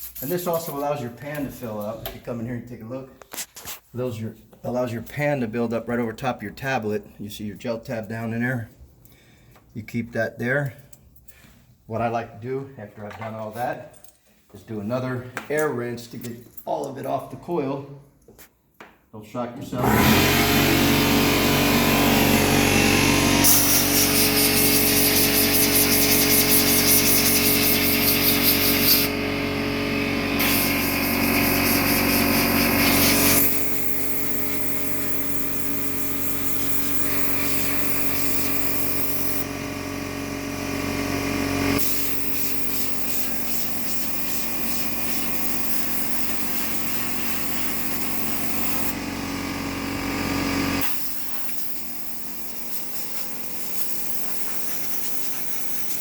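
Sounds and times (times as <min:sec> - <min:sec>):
air compressor running: 0:19.7 - 0:56.0
compressed air hissing blasts: 0:22.0 - 0:39.5, 0:41.8 - 0:49.0, 0:50.8 - 0:56.0.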